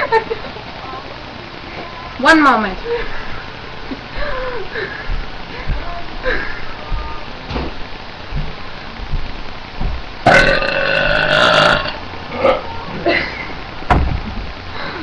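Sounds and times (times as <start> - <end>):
girl burping loudly: 10.3 - 12.8.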